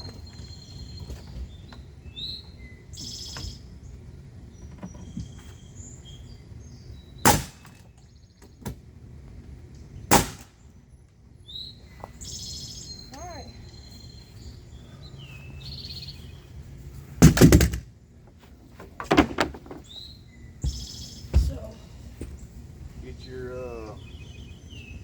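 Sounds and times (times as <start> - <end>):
birds chirping: 0.0 - 25.0
loud sharp impacts: 7.2 - 7.9, 10.1 - 10.6, 17.2 - 17.9.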